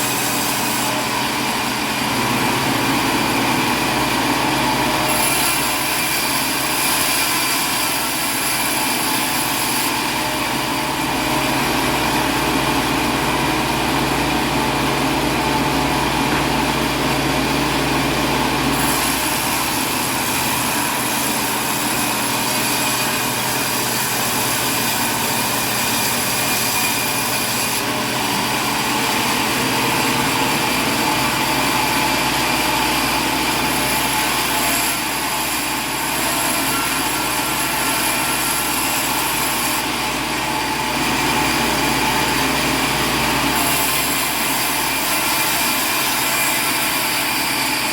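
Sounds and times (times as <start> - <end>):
loud engine noise: 0.0 - 5.1, 10.2 - 21.0, 27.2 - 34.2.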